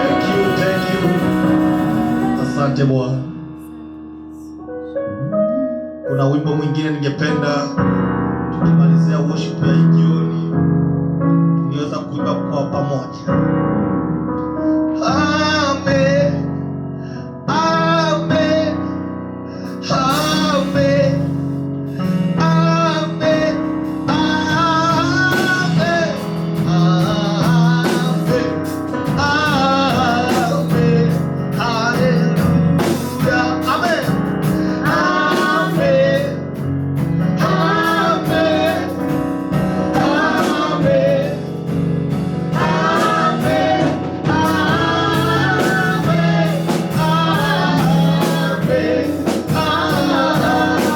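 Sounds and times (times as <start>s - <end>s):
men and women singing: 0.0s - 3.5s, 22.6s - 32.2s, 32.8s - 50.9s
guitar: 0.0s - 5.0s, 19.5s - 50.9s
keyboard: 0.0s - 50.9s.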